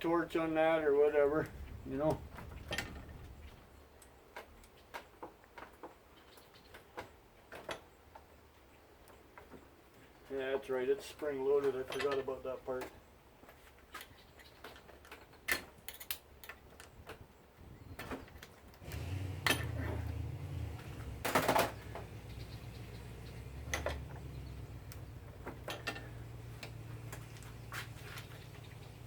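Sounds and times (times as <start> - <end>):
metal parts rattling: 25.6 - 26.2.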